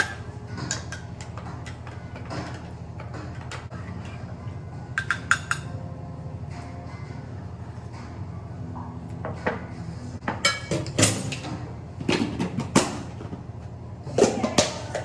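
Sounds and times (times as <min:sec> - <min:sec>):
dishes clinking and knocking: 0:00.0 - 0:04.2, 0:05.0 - 0:05.8, 0:09.2 - 0:13.4.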